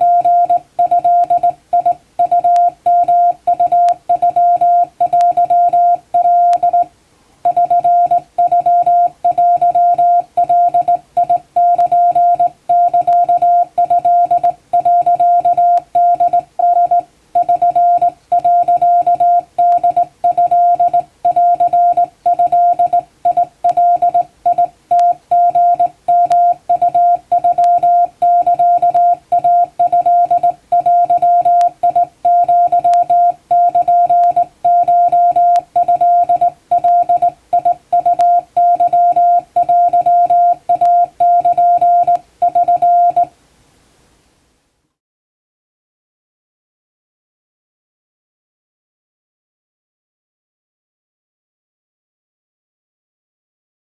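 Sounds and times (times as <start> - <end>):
morse code tone: 0.0 - 6.9, 7.5 - 43.3.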